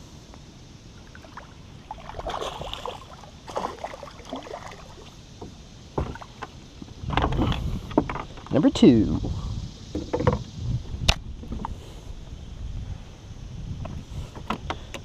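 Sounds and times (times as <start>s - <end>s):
water splashing against kayak: 1.0s - 5.2s.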